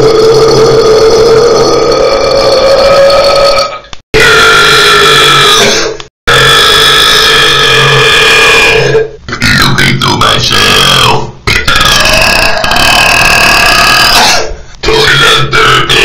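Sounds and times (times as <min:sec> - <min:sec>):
loud long human burps: 0:00.0 - 0:09.1, 0:11.7 - 0:14.5.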